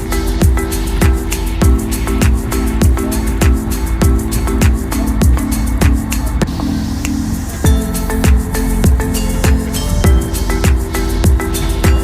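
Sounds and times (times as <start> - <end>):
low kick drum: 0.0 - 6.5, 7.6 - 12.0
held chords: 0.0 - 12.0.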